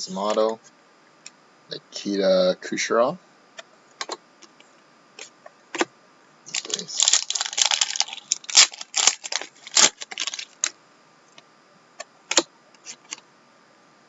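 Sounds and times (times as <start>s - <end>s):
foil wrapper crinkling and tearing: 6.5s - 10.7s.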